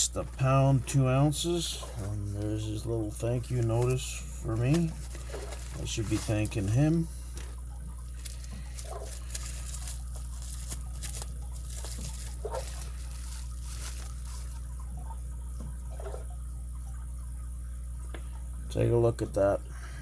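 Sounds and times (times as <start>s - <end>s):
steady low hum: 0.0s - 20.0s
packaging crinkling and rustling: 2.3s - 15.0s.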